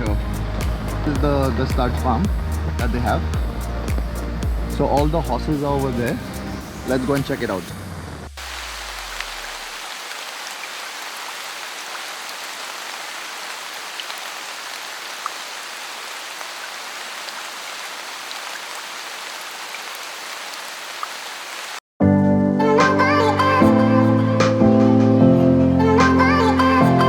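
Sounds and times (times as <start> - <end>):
music: 0.0 - 7.6, 22.0 - 27.0
rain falling: 0.0 - 21.8.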